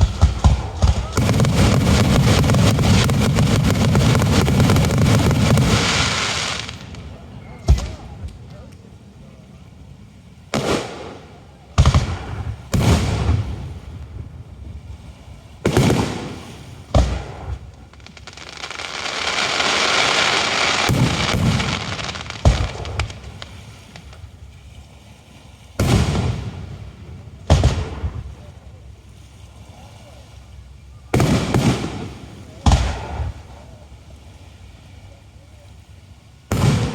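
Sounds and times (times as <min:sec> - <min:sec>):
firework shells bursting: 0:00.0 - 0:08.9, 0:15.6 - 0:24.4
hissing crackle of fireworks: 0:00.0 - 0:36.9.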